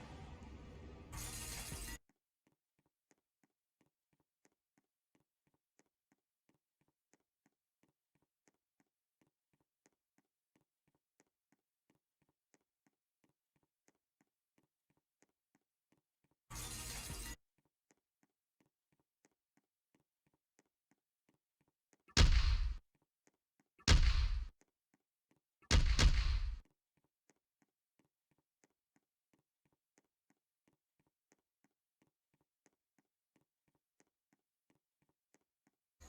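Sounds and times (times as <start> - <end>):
booming blast sound effects: 22.2 - 22.8, 23.9 - 24.5, 25.7 - 26.6.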